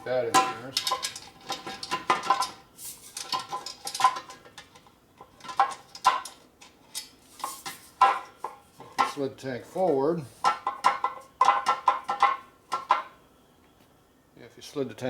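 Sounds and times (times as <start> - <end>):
metal tank clinking on bolts: 0.0 - 2.6.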